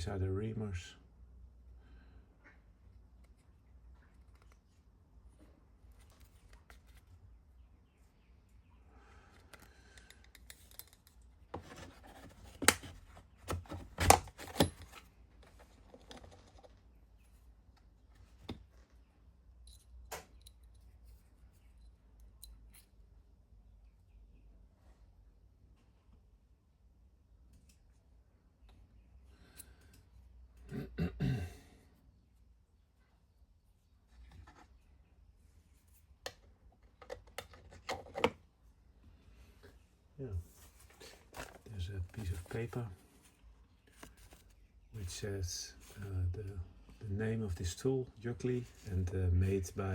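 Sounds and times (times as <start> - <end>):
faint rustle of handling: 3.1 - 8.2, 39.0 - 49.9.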